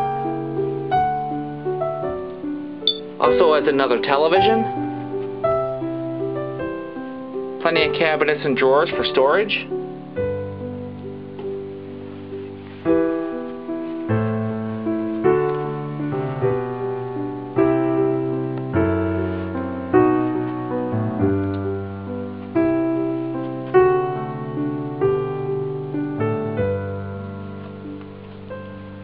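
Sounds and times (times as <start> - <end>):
piano playing chords: 0.0 - 29.0.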